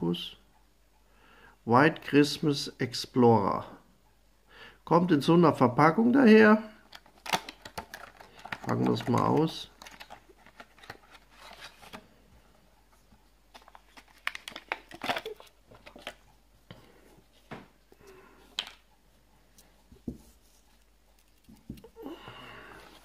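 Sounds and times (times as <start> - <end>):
packaging crinkling and rustling: 6.8 - 12.1, 13.5 - 16.3.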